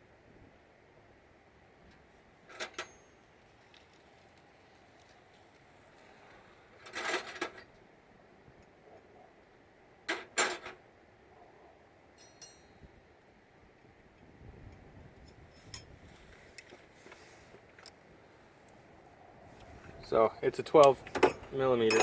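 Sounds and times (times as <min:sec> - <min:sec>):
metal hand tools clinking: 0:12.2 - 0:12.8, 0:20.6 - 0:22.0.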